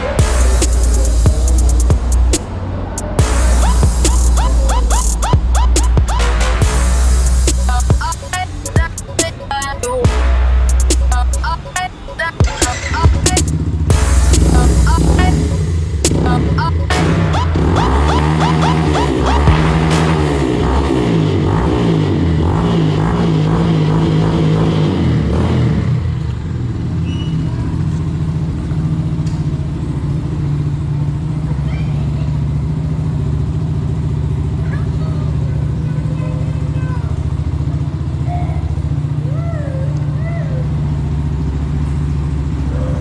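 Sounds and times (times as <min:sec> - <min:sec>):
music: 0:00.0 - 0:21.0
motorcycle engine idling: 0:00.0 - 0:25.2, 0:26.0 - 0:43.0.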